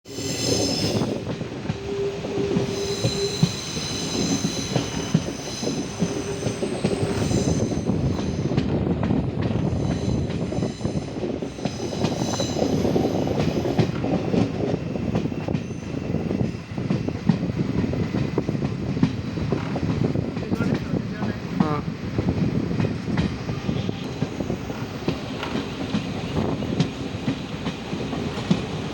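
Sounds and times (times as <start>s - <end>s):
train rumbling on rails: 0.0s - 28.9s
train wheels squealing: 0.1s - 8.6s, 9.6s - 18.5s
rail clicks: 0.5s - 28.9s.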